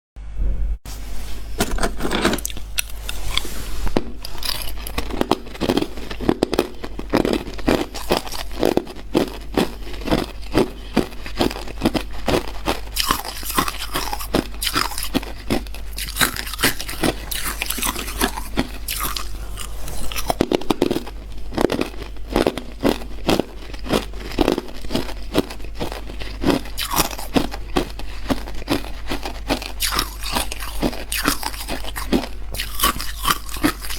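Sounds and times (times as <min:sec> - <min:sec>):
steady low hum: 0:00.2 - 0:33.9
ice crunching being chewed: 0:02.4 - 0:03.5, 0:04.2 - 0:33.9.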